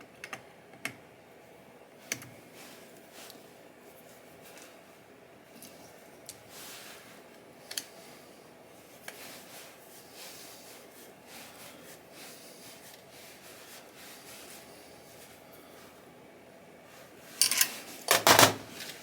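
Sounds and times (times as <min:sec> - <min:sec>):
soft rubbing and shuffling: 0:02.4 - 0:18.1
metal tools clicking: 0:17.4 - 0:17.7.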